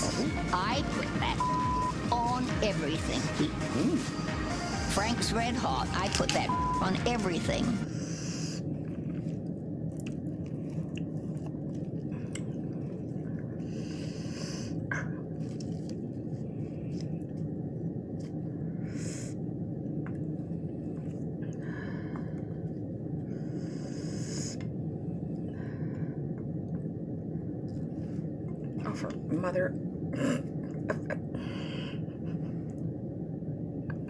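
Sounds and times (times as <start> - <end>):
steady low hum: 0.0 - 34.0
crunchy chewing: 8.6 - 14.5.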